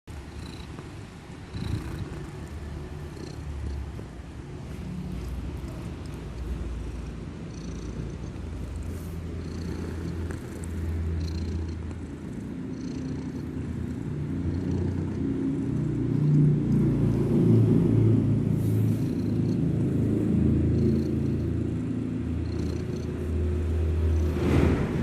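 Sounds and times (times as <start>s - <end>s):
kitten snoring: 0.1s - 25.0s.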